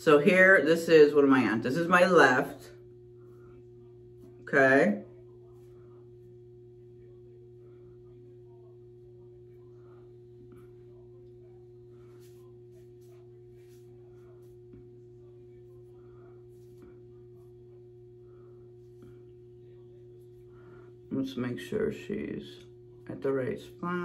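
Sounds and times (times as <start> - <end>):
faint room hum: 0.0 - 24.0
soft rustles: 11.9 - 17.5.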